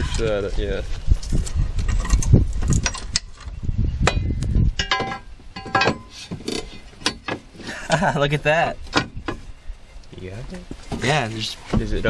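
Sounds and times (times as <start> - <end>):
metal plate knocking and clanking: 4.0 - 6.2.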